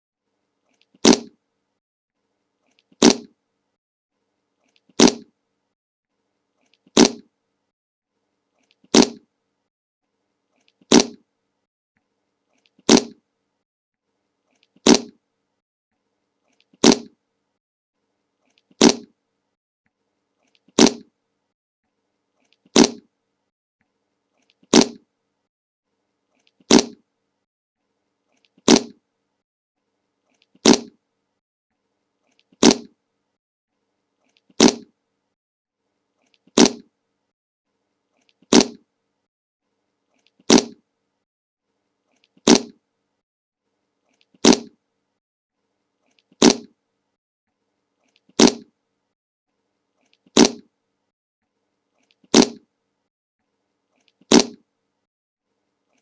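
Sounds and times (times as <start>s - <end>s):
fart sound effect: 1.0s - 1.4s, 3.0s - 3.3s, 5.0s - 5.3s, 6.9s - 7.3s, 8.9s - 9.2s, 10.9s - 11.2s, 12.8s - 13.2s, 14.8s - 15.2s, 16.8s - 17.2s, 18.8s - 19.1s, 20.8s - 21.1s, 22.7s - 23.1s, 24.7s - 25.0s, 26.7s - 27.0s, 28.6s - 29.0s, 30.6s - 31.0s, 32.6s - 32.9s, 34.6s - 34.9s, 36.6s - 36.9s, 38.5s - 38.8s, 40.5s - 40.8s, 42.5s - 42.8s, 44.4s - 44.8s, 46.4s - 46.7s, 48.4s - 48.7s, 50.4s - 50.7s, 52.3s - 52.6s, 54.3s - 54.6s.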